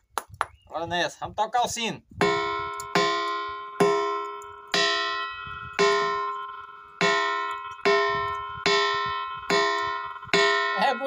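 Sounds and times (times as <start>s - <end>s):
ringing rock struck like a bell: 2.2s - 11.0s.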